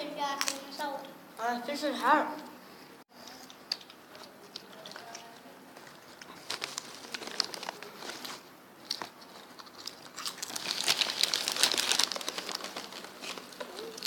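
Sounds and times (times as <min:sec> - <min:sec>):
crisp packet crinkling: 0:04.7 - 0:14.0.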